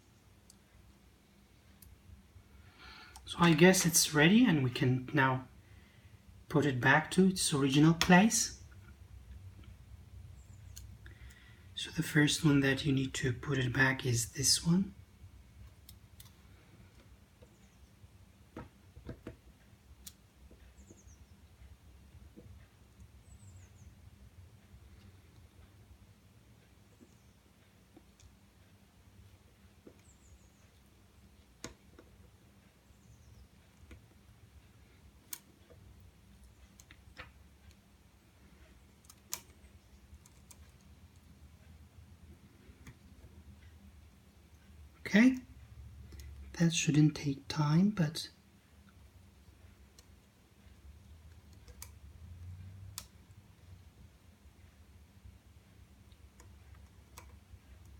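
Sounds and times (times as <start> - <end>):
small parts clicking and tapping: 38.4 - 41.4, 49.6 - 52.1.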